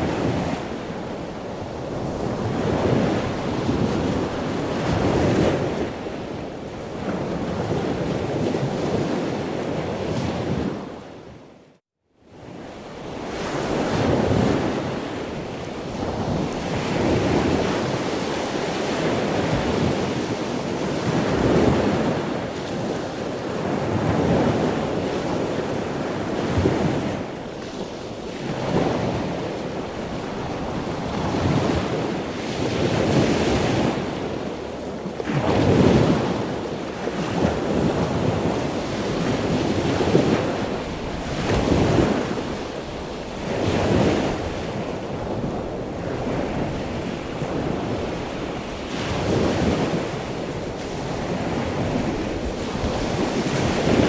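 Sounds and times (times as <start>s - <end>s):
ocean waves breaking: 15.9s - 54.0s.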